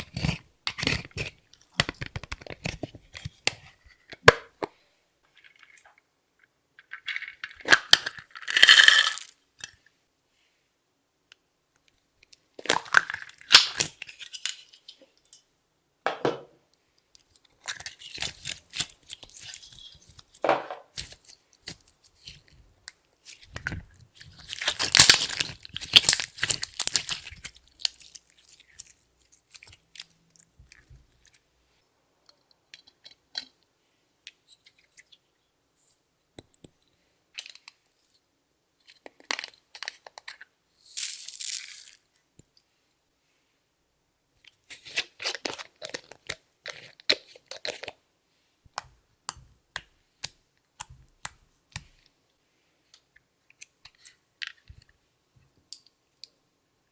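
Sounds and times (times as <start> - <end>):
slime crackling and crunching: 24.2 - 30.1.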